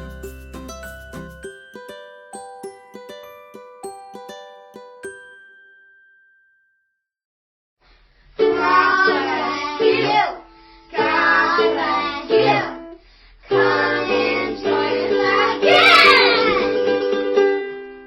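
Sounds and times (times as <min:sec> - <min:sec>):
ukulele: 0:00.0 - 0:05.5, 0:08.4 - 0:12.8, 0:13.5 - 0:18.0
children singing: 0:08.4 - 0:12.8, 0:13.5 - 0:17.1.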